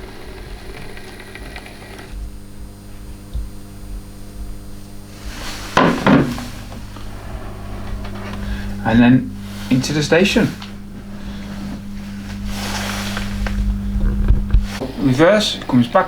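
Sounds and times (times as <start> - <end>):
model train motor hum: 0.0 - 14.1
sharp clattering knocks: 5.6 - 8.8.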